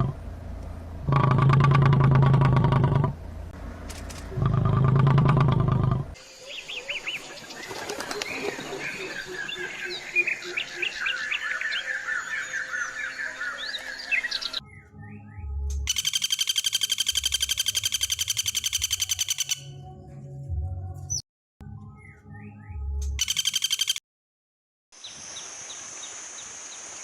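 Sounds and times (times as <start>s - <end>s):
birds chirping and calling: 6.2s - 19.7s.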